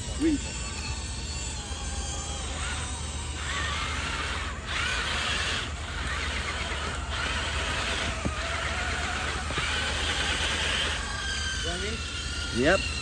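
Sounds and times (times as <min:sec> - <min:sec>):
electric motor whining: 0:00.0 - 0:13.0.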